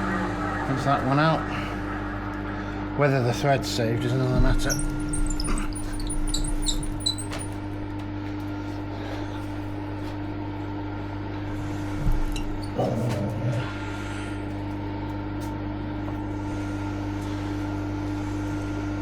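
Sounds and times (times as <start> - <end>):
machine motor hum: 0.0 - 19.0
high metallic squeaks and ticks: 4.4 - 8.0.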